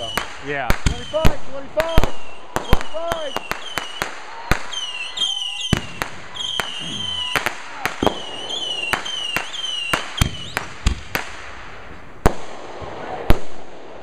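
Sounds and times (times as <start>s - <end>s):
firework whistle: 0.0s - 10.7s
fireworks bangs: 0.0s - 14.0s.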